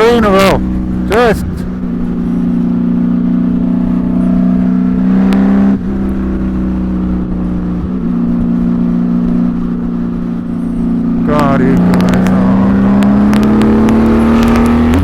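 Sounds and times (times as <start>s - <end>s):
motorcycle engine running steadily: 0.0s - 15.0s.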